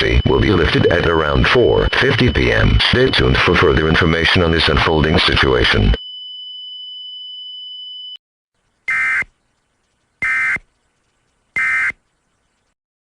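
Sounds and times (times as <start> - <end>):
buzzy data bursts: 0.0 - 6.0
steady high-pitched tone: 0.0 - 6.0.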